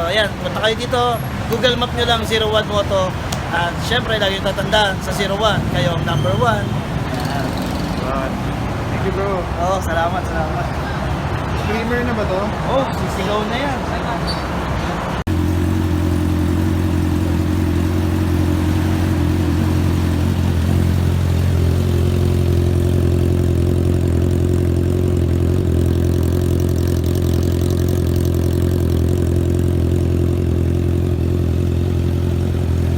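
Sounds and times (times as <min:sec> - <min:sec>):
motorcycle engine idling: 0:15.3 - 0:32.9.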